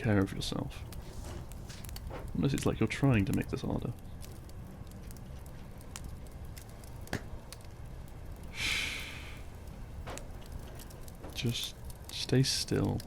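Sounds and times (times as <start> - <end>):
fire crackling and popping: 0.0 - 13.0
short breathy hiss: 8.5 - 9.5.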